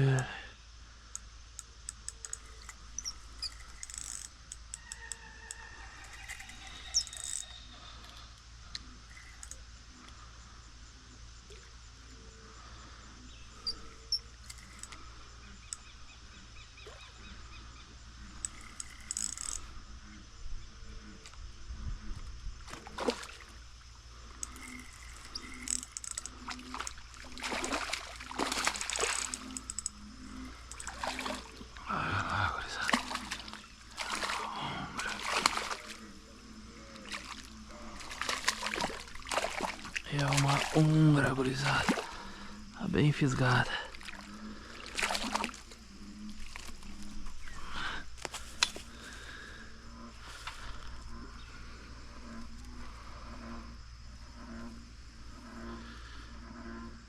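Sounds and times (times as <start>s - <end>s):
fishing reel drag clicking: 1.1s - 9.6s, 13.7s - 15.0s, 18.2s - 19.8s, 24.3s - 31.7s
faint bird calls: 2.0s - 10.6s, 11.5s - 21.4s
fish splashing at the surface: 22.7s - 23.6s, 26.4s - 29.6s, 30.8s - 31.7s, 32.7s - 36.1s, 37.0s - 41.0s, 41.7s - 42.3s, 43.9s - 45.8s.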